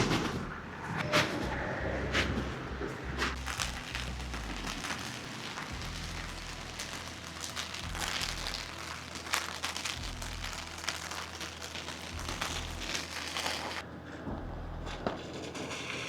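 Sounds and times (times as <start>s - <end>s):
low hum: 0.0s - 9.2s, 12.0s - 16.0s
rain patter: 3.1s - 13.8s.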